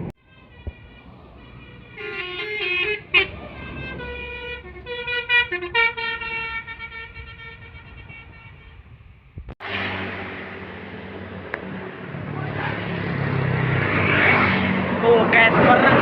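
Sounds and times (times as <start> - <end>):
melodic bus horn tune: 0.0 - 11.3
low engine rumble: 0.0 - 13.8.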